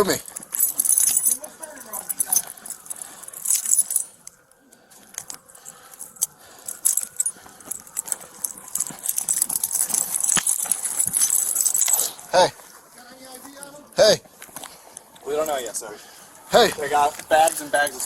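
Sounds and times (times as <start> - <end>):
keys and handcuffs jingling: 0.0 - 12.4.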